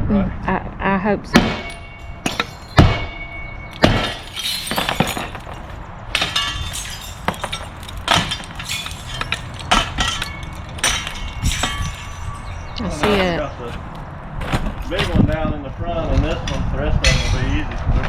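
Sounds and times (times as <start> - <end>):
glass shattering and tinkling: 1.4 - 13.4.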